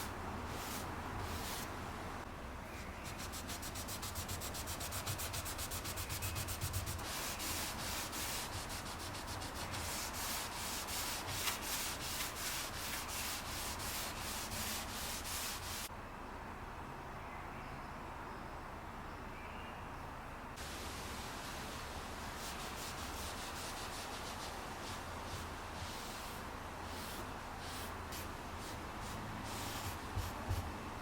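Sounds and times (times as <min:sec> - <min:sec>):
hand sanding strokes: 0:00.0 - 0:01.7, 0:03.0 - 0:15.9, 0:21.5 - 0:30.7.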